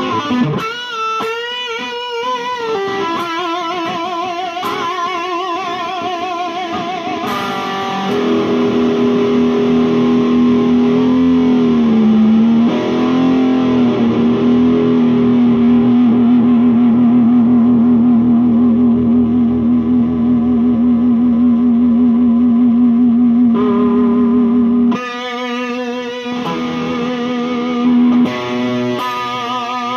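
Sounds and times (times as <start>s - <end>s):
electric guitar vibrato notes: 0.0s - 29.9s.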